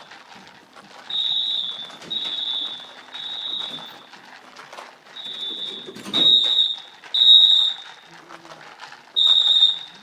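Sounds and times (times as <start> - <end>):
high-pitched fire alarm horn blasts: 1.1 - 4.0, 5.2 - 8.0, 9.2 - 10.0.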